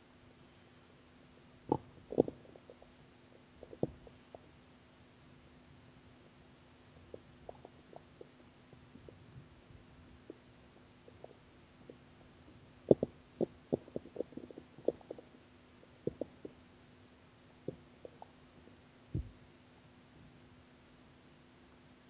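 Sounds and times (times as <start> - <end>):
stomach growling: 1.7 - 4.4, 7.0 - 16.6, 17.6 - 18.4.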